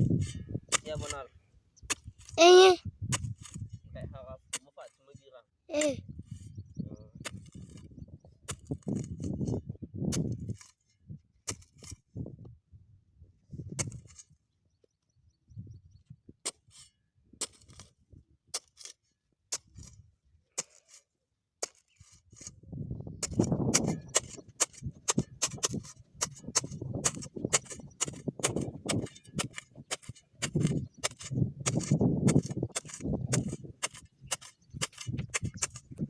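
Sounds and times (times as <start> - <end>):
blade cutting grass: 23.2 - 36.0.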